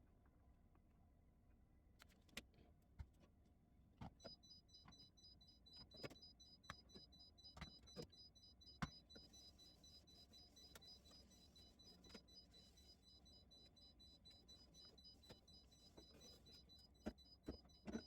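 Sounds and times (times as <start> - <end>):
faint pulsing high tone: 4.2 - 18.0.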